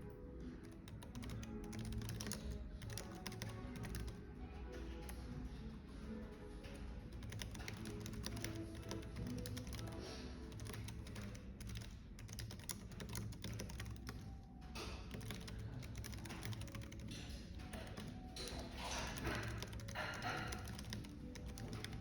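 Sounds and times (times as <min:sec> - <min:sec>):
soft background music: 0:00.0 - 0:22.0
typing on keyboard: 0:00.0 - 0:22.0.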